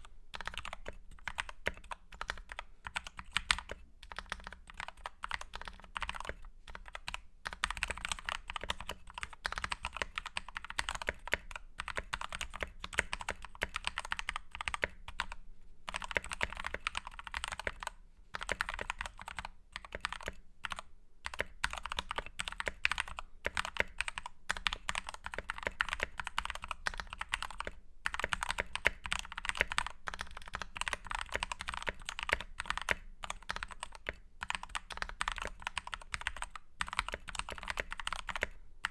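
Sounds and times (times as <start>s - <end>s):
mechanical keyboard typing: 0.3s - 38.9s.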